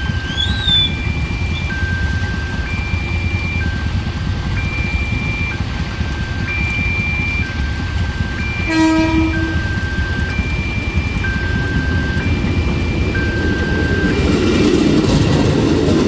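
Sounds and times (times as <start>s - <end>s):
level crossing alarm two tones: 0.0s - 14.4s
steady low rumble: 0.0s - 16.0s
train horn blast: 8.6s - 9.8s.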